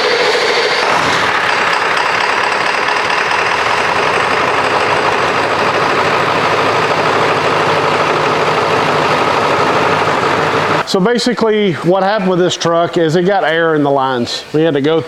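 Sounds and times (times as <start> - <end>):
diesel engine idling: 0.0 - 10.9.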